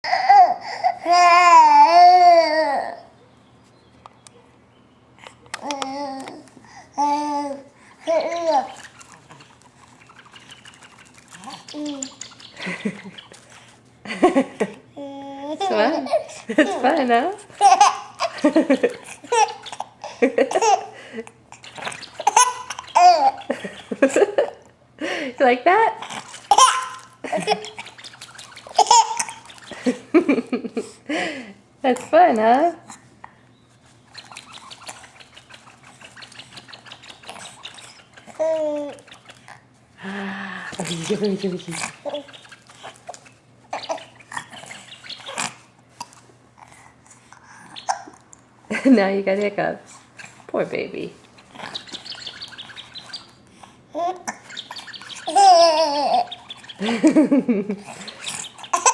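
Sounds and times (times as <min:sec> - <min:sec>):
baby laughing: 0:00.0 - 0:03.0, 0:07.0 - 0:09.4, 0:14.3 - 0:21.6, 0:22.2 - 0:24.6, 0:26.0 - 0:27.9, 0:28.7 - 0:30.2, 0:38.2 - 0:39.1, 0:43.7 - 0:46.2, 0:47.8 - 0:48.2, 0:55.2 - 0:58.9
baby babbling: 0:05.6 - 0:08.8, 0:15.0 - 0:16.3, 0:38.4 - 0:39.0.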